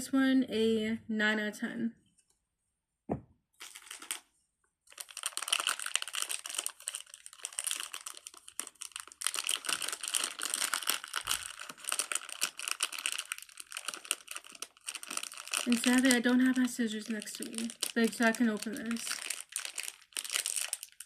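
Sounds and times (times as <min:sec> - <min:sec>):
thump: 0:03.1 - 0:03.3
plastic packaging crinkling: 0:03.6 - 0:04.3, 0:04.9 - 0:21.0.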